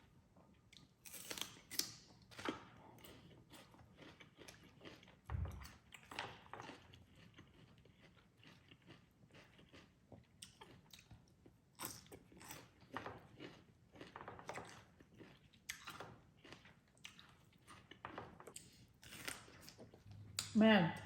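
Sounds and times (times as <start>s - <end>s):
chewing salad with crunches: 0.5s - 21.0s.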